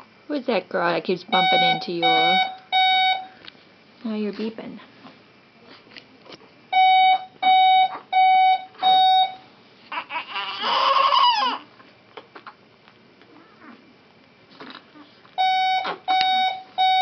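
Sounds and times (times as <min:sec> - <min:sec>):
monitor alarm beeping: 0:01.3 - 0:03.4, 0:06.7 - 0:09.5, 0:15.4 - 0:17.0
baby crying: 0:09.9 - 0:11.7.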